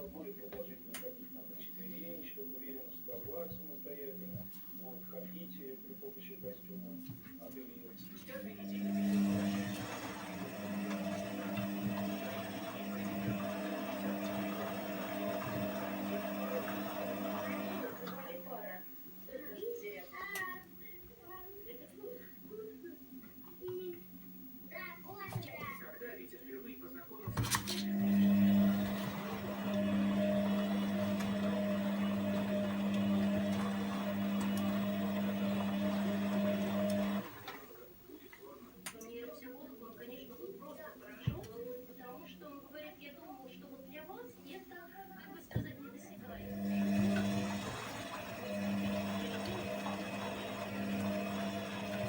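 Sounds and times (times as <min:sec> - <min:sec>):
washing machine motor hum: 0:00.0 - 0:52.0.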